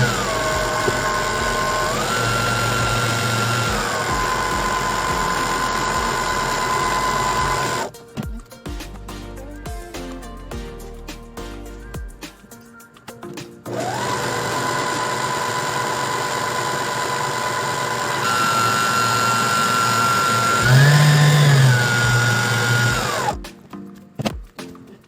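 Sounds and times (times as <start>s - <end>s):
electric stand mixer whining: 0.0s - 7.9s, 13.7s - 23.4s.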